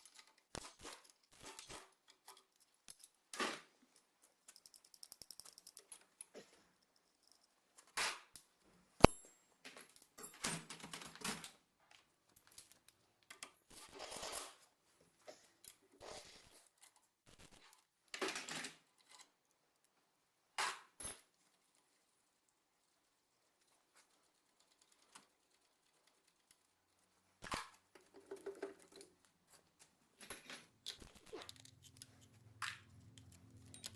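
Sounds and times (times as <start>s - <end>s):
metal tools clinking and scraping: 30.2s - 33.9s.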